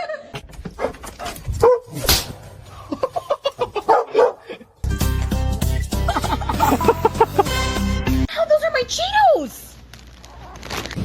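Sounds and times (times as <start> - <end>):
dog barking: 1.6 - 2.0, 3.9 - 4.5
music: 4.8 - 8.3.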